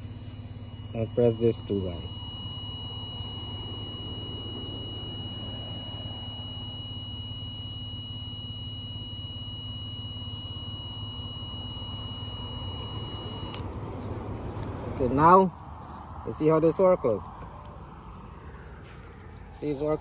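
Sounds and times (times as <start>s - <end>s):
high-pitched electronic buzzer tone: 0.0s - 13.6s
low steady hum: 0.0s - 20.0s.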